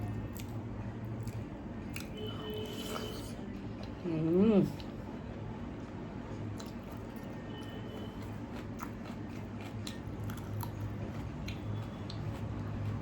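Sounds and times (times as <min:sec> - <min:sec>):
chewing: 0:06.4 - 0:13.0.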